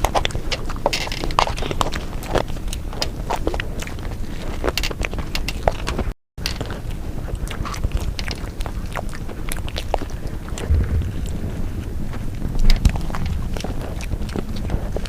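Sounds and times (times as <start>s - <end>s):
chewing and biting crunchy food: 0.0s - 15.0s
low rumble: 10.6s - 15.0s.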